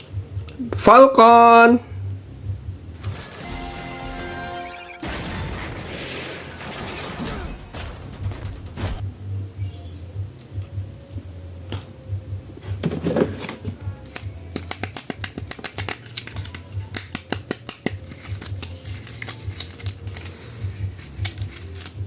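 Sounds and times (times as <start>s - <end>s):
steady low hum: 0.0s - 4.4s, 8.0s - 22.0s
plastic packaging rustling: 12.6s - 22.0s
clicks and crackle: 14.1s - 22.0s.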